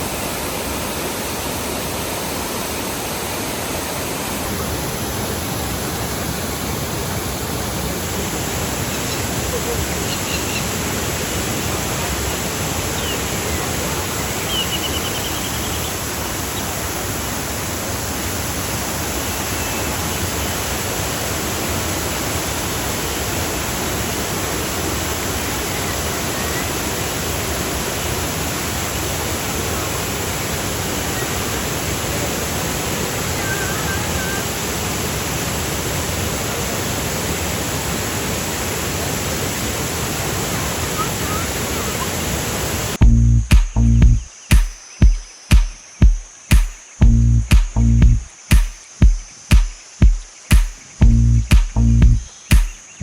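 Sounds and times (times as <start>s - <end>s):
river water rushing: 0.0s - 43.0s
faint high chirps: 13.0s - 16.0s.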